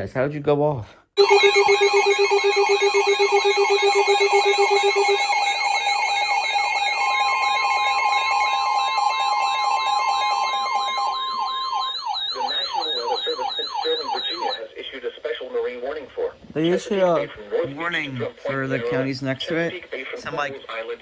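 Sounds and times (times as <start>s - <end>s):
fast pulsing beep: 1.2s - 14.6s
sweeping chirps: 1.2s - 14.6s
warbling high tone: 1.2s - 14.6s.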